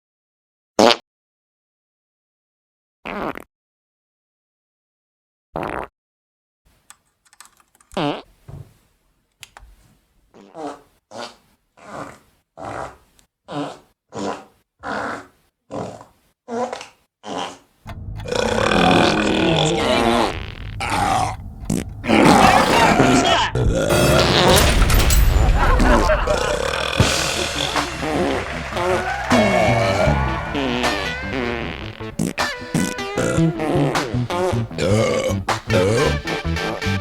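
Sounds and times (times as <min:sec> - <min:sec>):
human farts: 0:00.8 - 0:01.0, 0:03.0 - 0:03.5, 0:05.6 - 0:05.9, 0:07.9 - 0:08.6, 0:10.3 - 0:17.6, 0:18.2 - 0:24.5, 0:26.3 - 0:36.8
long rough sound: 0:17.9 - 0:23.2, 0:23.9 - 0:32.7.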